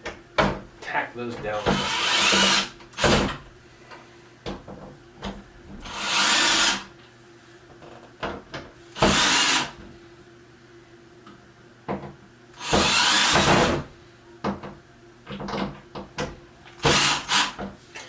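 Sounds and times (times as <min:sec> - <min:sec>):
cordless drill driving screws: 0:01.6 - 0:03.3, 0:05.9 - 0:06.9, 0:09.0 - 0:09.7, 0:12.6 - 0:13.8, 0:16.8 - 0:17.6.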